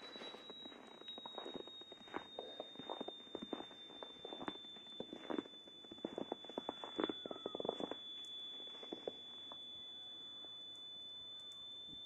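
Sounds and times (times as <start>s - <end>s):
footsteps crunching on snow: 0.0s - 8.0s
steady high-pitched whine: 0.0s - 12.0s.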